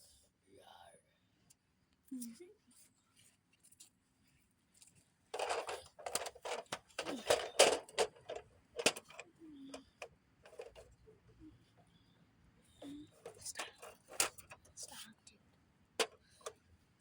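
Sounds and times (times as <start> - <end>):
small hard objects clicking and rattling: 5.4 - 9.2.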